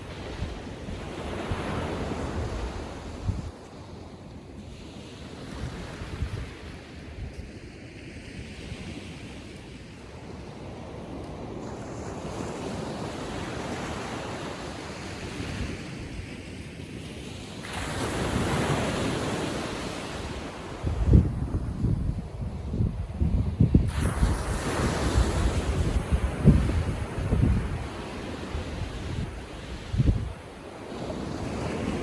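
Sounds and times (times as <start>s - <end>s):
wind rumble on microphone: 0.0s - 3.6s, 5.5s - 7.6s, 17.8s - 32.0s
ocean surf washing on beach: 0.0s - 32.0s
wave breaking: 23.6s - 30.4s.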